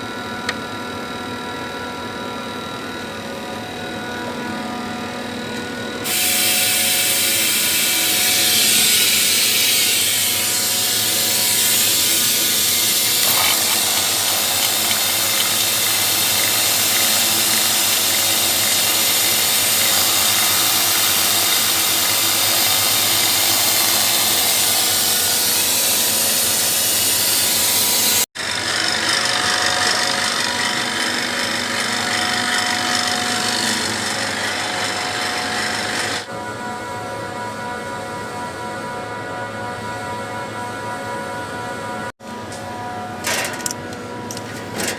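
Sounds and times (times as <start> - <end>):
power tool running: 4.1 - 36.5.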